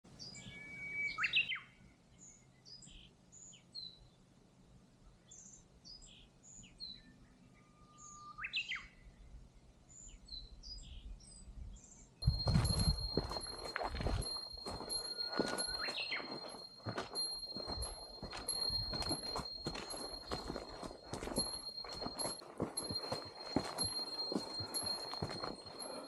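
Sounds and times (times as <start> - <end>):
birds chirping and whistling: 0.3 - 1.6, 12.2 - 26.0.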